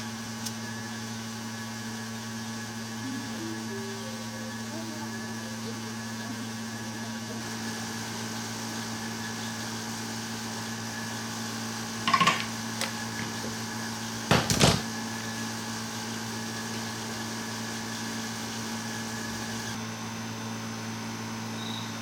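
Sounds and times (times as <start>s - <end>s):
machine humming: 0.0s - 22.0s.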